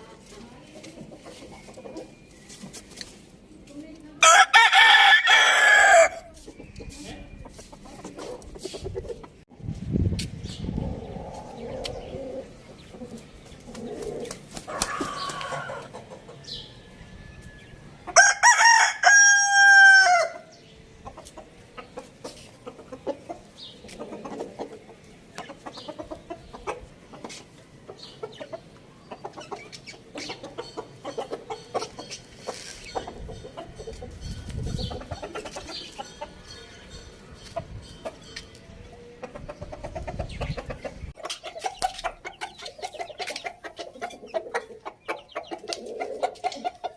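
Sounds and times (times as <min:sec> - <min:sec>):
chickens clucking softly: 0:00.3 - 0:02.3, 0:06.3 - 0:09.4, 0:10.6 - 0:16.8, 0:20.8 - 0:46.9
rooster crowing: 0:04.2 - 0:06.3, 0:14.8 - 0:15.9, 0:18.2 - 0:20.5.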